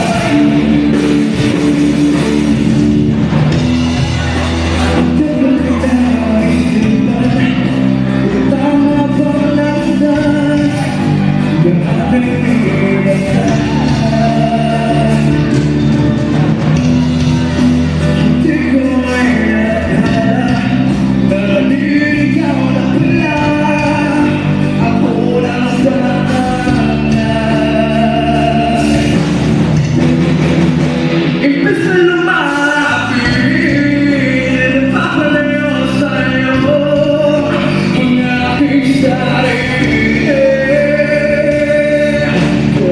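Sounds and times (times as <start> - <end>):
person singing: 0.0 - 30.0, 31.0 - 42.9
live band playing: 0.0 - 42.9.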